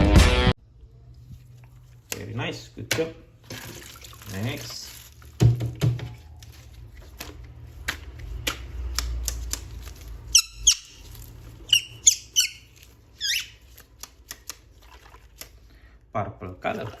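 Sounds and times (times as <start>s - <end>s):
short high squeaks: 10.3s - 13.6s.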